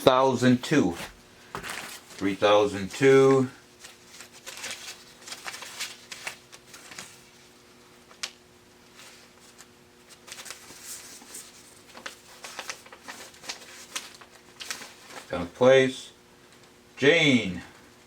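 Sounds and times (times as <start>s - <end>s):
faint steady hum: 0.0s - 18.0s
paper rustling: 0.8s - 3.0s, 3.7s - 15.5s
pages turning: 0.9s - 2.4s, 3.8s - 15.5s.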